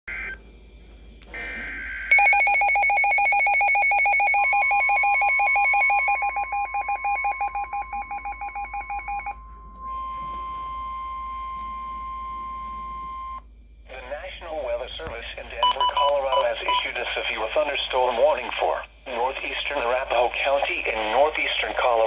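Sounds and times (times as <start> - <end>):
steady warning alert tone: 1.4 - 9.4
warbling alert alarm: 1.4 - 12.4
radio speaker hiss: 13.9 - 22.0.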